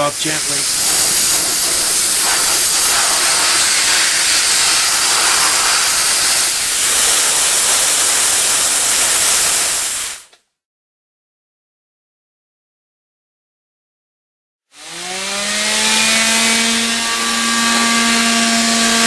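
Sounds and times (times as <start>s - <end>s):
steam hissing from a steamer: 0.0s - 10.3s.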